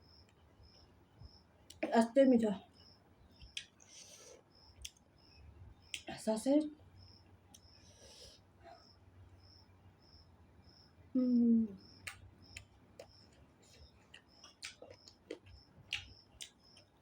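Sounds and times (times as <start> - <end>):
chewing and mouth clicks: 3.3 - 4.0, 4.7 - 5.1, 12.0 - 17.0
person humming: 11.2 - 11.8.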